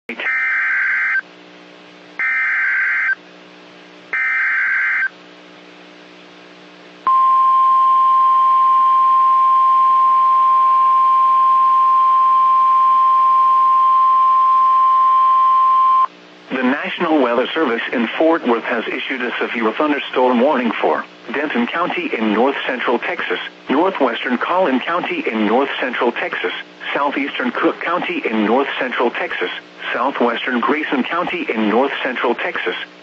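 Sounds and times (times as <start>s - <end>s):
steady single-tone warning alarm: 2.2s - 3.2s, 4.2s - 5.1s.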